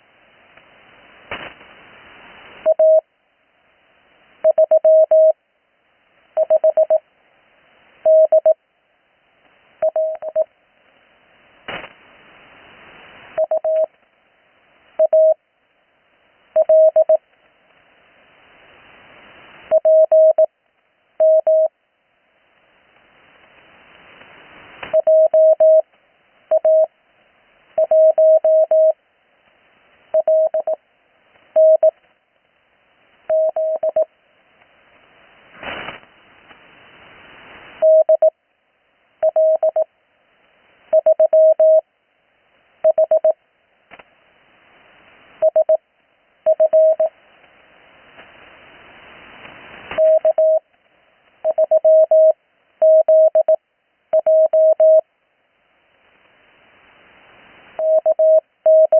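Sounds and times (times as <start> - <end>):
radio hiss: 0.0 - 3.0, 33.0 - 38.3, 46.4 - 52.3
morse code tone: 4.5 - 5.4, 6.4 - 7.0, 8.1 - 8.6, 9.8 - 10.5, 13.4 - 13.9, 25.0 - 25.8, 26.5 - 26.9, 27.8 - 29.0, 30.2 - 30.8, 31.6 - 31.9, 33.3 - 34.1, 37.8 - 38.3, 39.2 - 39.9, 41.0 - 41.8, 42.9 - 43.4, 46.5 - 47.1, 50.0 - 50.6, 51.5 - 53.6, 54.2 - 55.0, 57.8 - 58.9.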